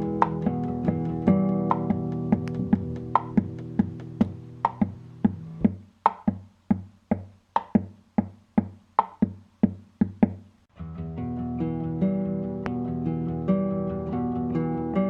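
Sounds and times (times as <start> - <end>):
pitched percussive notes: 0.0 - 6.4.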